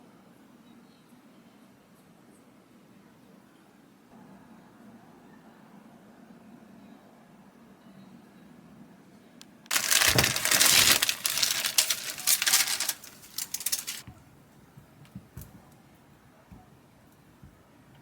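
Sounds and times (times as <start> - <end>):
packaging crinkling and tearing: 9.7 - 14.0.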